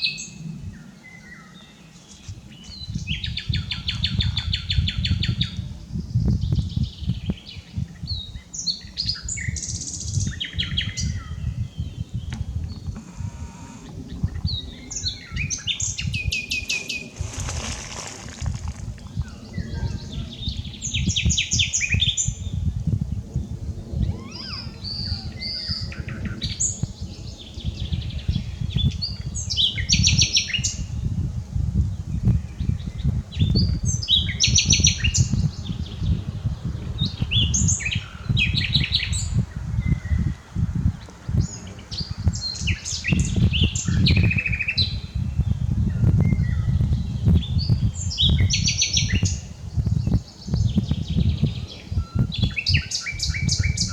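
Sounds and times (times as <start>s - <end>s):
steady low rumble: 9.5s - 29.8s
nightingale singing: 24.0s - 30.9s, 41.0s - 53.9s.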